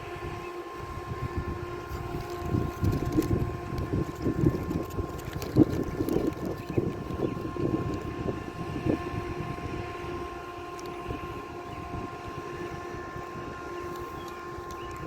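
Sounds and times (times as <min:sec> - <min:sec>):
engine hum: 0:00.0 - 0:15.0
crunching and rustling: 0:01.4 - 0:09.0, 0:12.6 - 0:15.0.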